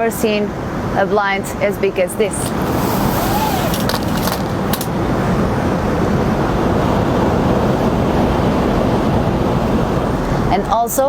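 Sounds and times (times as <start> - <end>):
airplane cabin rushing noise: 1.9 - 10.3.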